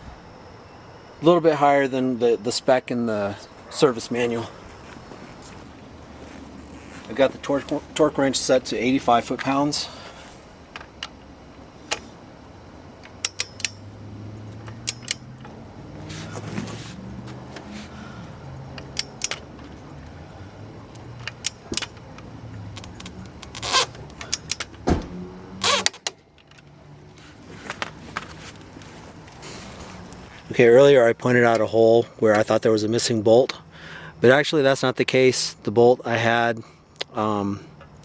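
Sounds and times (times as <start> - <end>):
faint low hum: 0.0 - 38.0
torque wrench clicking: 13.0 - 13.9, 14.6 - 15.5, 18.7 - 19.5, 20.9 - 22.0, 22.7 - 24.7.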